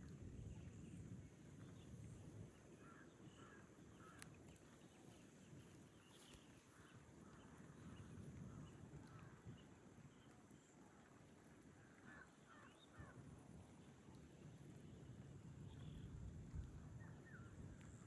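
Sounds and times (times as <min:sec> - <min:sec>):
faint bird calls: 0:02.6 - 0:11.1, 0:11.7 - 0:13.2.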